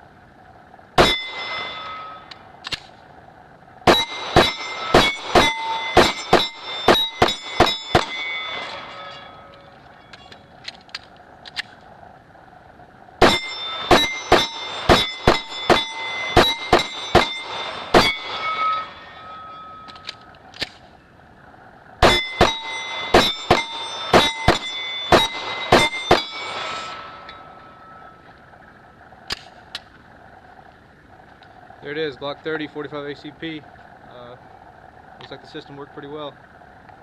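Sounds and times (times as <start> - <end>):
steel target plates ringing: 1.0 - 10.9, 13.1 - 30.6
pistol shots in rapid strings: 3.9 - 8.6, 13.2 - 18.5.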